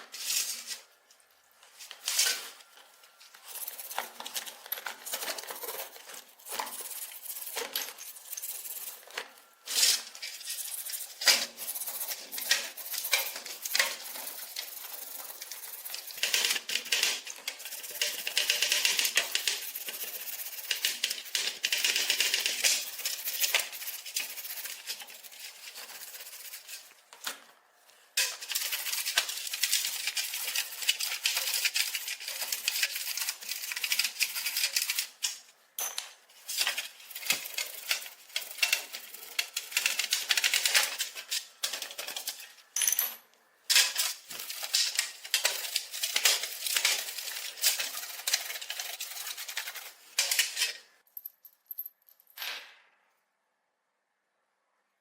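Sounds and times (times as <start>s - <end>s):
clicking and rasping on metal: 36.5s - 42.6s.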